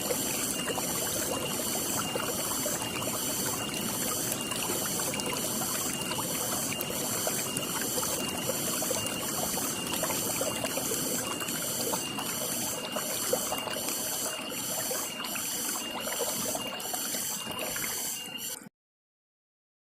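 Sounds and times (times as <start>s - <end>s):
small water splashes: 0.0s - 18.4s
water trickling: 0.0s - 18.5s
high pulsing animal chirp: 0.3s - 18.6s.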